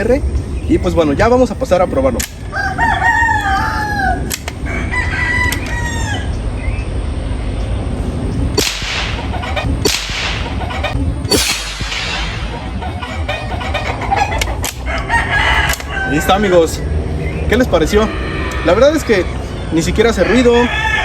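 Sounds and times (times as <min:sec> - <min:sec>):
rooster crowing: 0:02.3 - 0:06.6, 0:12.3 - 0:16.9, 0:17.7 - 0:21.0
rifle shots: 0:08.5 - 0:13.3.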